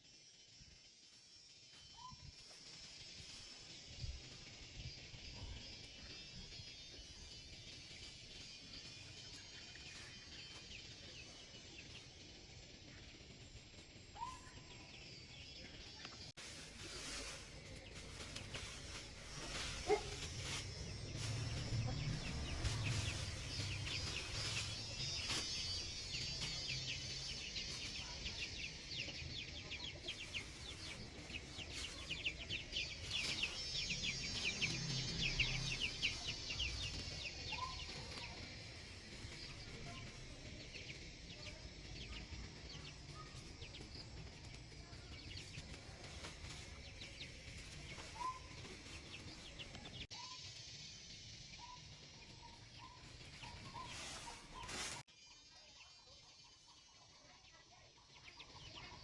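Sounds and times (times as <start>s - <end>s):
chickens clucking: 17.1s - 41.0s.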